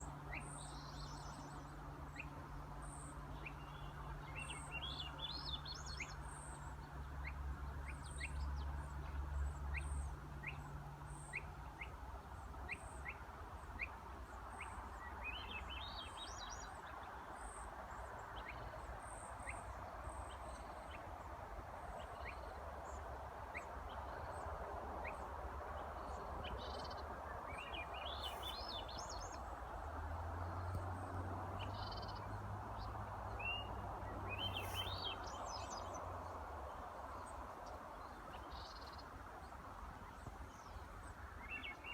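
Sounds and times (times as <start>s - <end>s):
songbirds chirping and singing: 0.0s - 12.0s, 22.0s - 41.9s.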